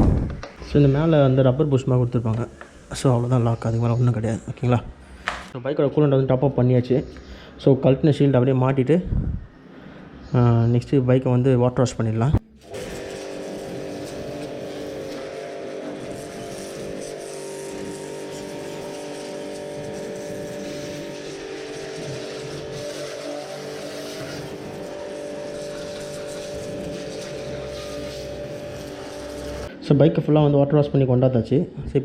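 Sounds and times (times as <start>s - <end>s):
pressure washer motor drone: 12.5s - 29.7s
water jet hissing: 12.6s - 29.7s.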